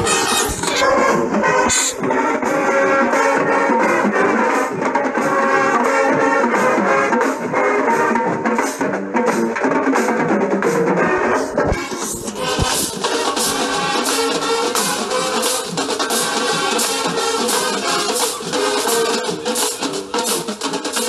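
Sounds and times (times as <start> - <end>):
steady drum beat: 0.0 - 2.6, 8.4 - 21.0
marching band playing: 0.0 - 8.2
brass melody: 0.0 - 8.4, 10.9 - 20.4.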